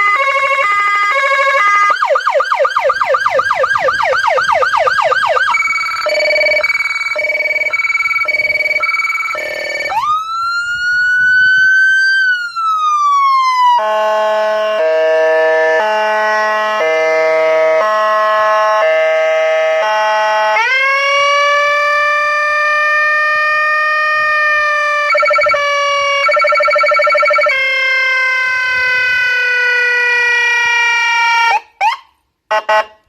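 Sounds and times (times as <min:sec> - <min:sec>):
electronic siren cycling tones: 0:00.0 - 0:14.2, 0:22.7 - 0:27.8.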